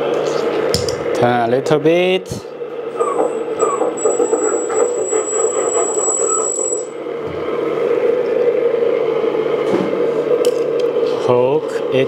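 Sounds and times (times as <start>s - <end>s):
electronic engine idle drone: 2.6s - 9.4s
thin high whine: 2.9s - 8.8s.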